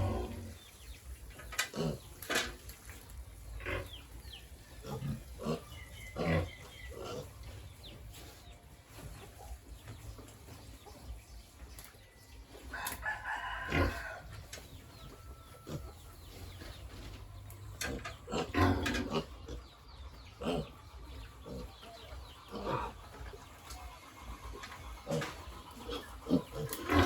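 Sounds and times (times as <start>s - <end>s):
hens clucking: 0.0s - 27.0s
rooster crowing: 12.7s - 14.3s
farm fowl calls: 12.7s - 17.3s, 17.9s - 27.0s.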